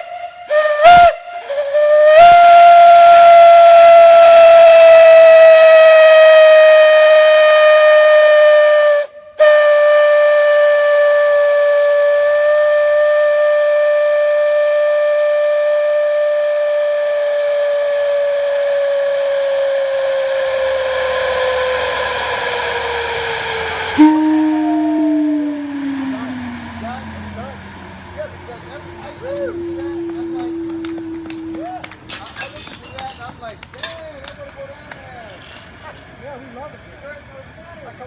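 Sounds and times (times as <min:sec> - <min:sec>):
rushing hiss: 0:00.0 - 0:33.0
whistle blowing long note: 0:00.0 - 0:33.1.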